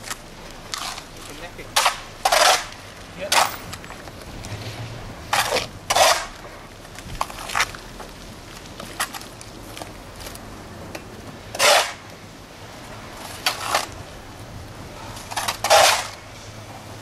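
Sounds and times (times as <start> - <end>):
shovels scraping silt: 0.7 - 3.4, 4.7 - 6.5, 11.5 - 12.1, 15.0 - 16.6.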